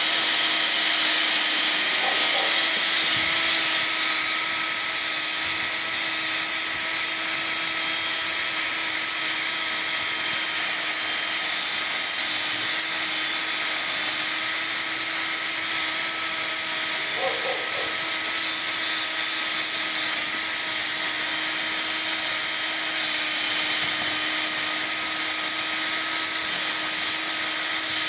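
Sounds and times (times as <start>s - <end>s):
polishing pad hissing on plastic: 0.0s - 5.0s, 17.0s - 28.0s
electric drill whine: 0.0s - 28.0s.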